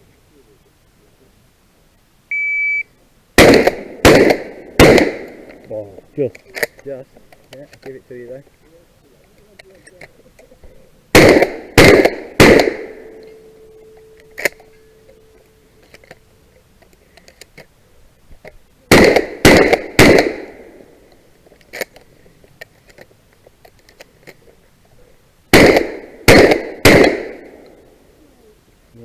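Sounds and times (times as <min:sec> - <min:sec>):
shotgun shots: 0:03.4 - 0:05.6, 0:11.1 - 0:13.2, 0:18.9 - 0:20.9, 0:25.5 - 0:27.7
faint ringing tone: 0:13.1 - 0:16.8.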